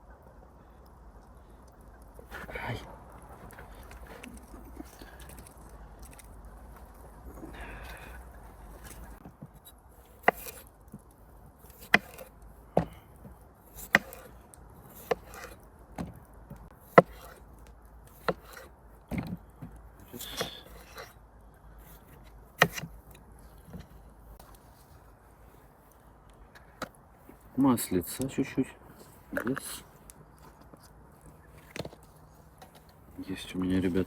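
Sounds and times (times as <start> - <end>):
knife chopping on cutting board: 10.2 - 10.6, 11.8 - 13.0, 13.8 - 14.3, 15.0 - 15.6, 17.0 - 17.4, 18.2 - 18.7, 22.6 - 22.9.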